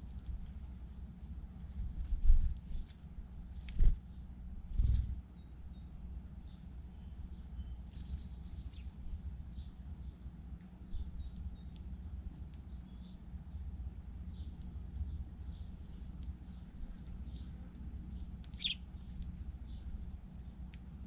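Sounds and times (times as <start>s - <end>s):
low outdoor rumble: 0.0s - 21.0s
blackbird chirps: 2.6s - 3.1s, 5.3s - 10.3s, 14.3s - 20.7s.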